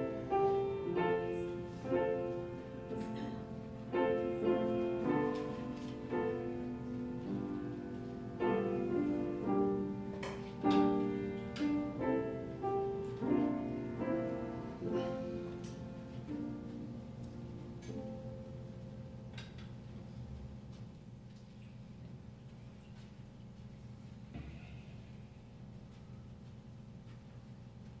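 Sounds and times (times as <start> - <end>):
slow piano music: 0.0 - 20.4.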